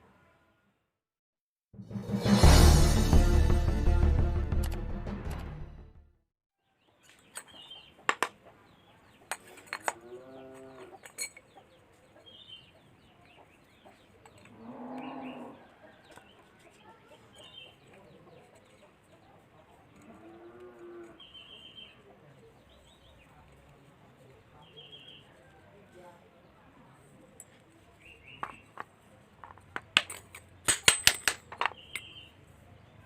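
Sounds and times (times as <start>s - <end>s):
small birds chirping: 6.6s - 29.8s, 31.7s - 33.0s
farm animals calling: 14.4s - 15.9s.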